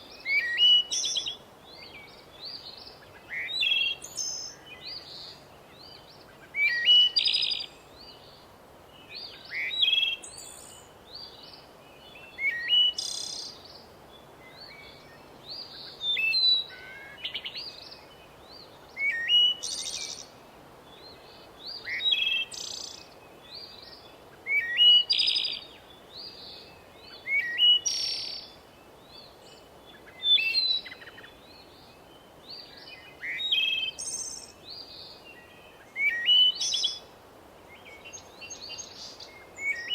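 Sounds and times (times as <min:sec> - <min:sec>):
faint steady hiss: 0:00.0 - 0:39.9
songbird chirping and trilling: 0:00.0 - 0:39.9.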